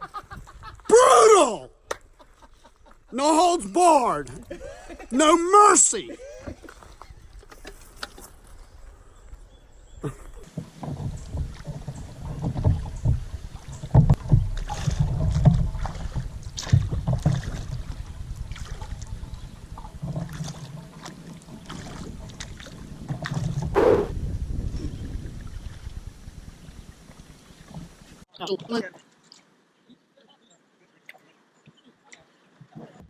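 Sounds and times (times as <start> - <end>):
wind buffeting microphone: 21.8 - 27.6.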